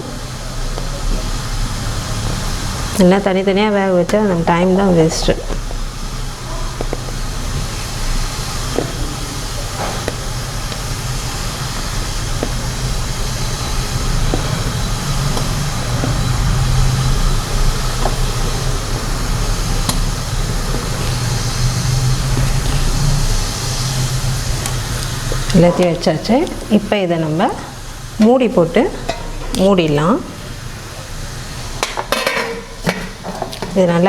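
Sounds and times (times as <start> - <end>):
stove and steamer rumble: 0.0 - 34.0
dough clinking on metal plates: 31.8 - 34.0.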